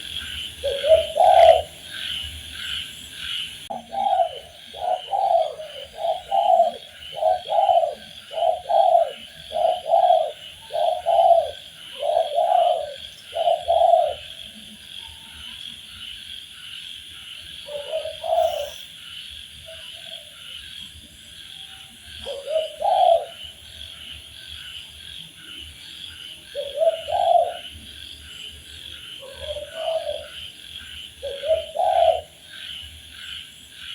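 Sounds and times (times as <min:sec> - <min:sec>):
dove cooing: 0:00.0 - 0:15.5, 0:17.6 - 0:19.0, 0:21.7 - 0:24.2, 0:26.5 - 0:27.8, 0:29.2 - 0:30.5, 0:31.2 - 0:32.8.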